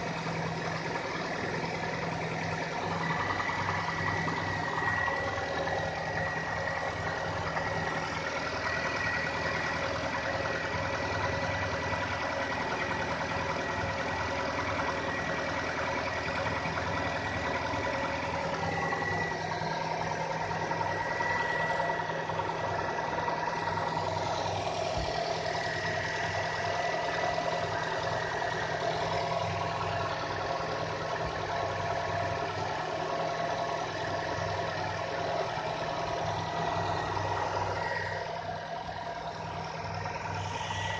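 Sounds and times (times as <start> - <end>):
car engine idling: 0.0 - 40.9
thin high whine: 11.7 - 40.9.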